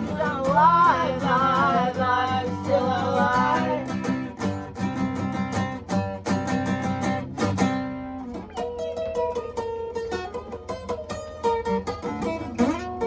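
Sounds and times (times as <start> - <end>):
bass line: 0.0 - 4.3
guitar picking melody: 0.0 - 13.0
guitars strumming chords: 0.0 - 13.0.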